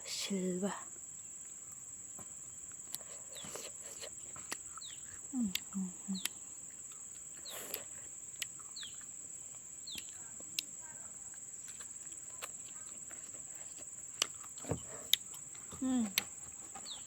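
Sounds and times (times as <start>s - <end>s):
crickets droning: 0.0s - 17.0s
bird chirps: 3.3s - 3.7s, 4.3s - 5.2s, 6.1s - 7.8s, 8.6s - 9.1s, 9.8s - 10.2s, 16.8s - 17.0s.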